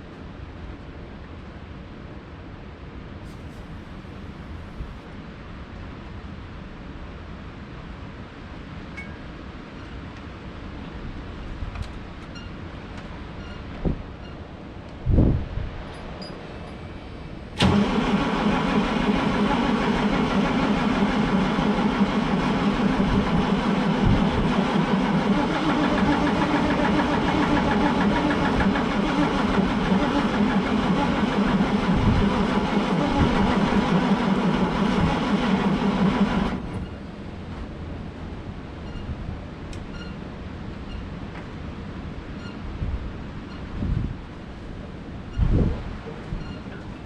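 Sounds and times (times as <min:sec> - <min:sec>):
diesel engine cranking without starting: 0:17.5 - 0:37.0.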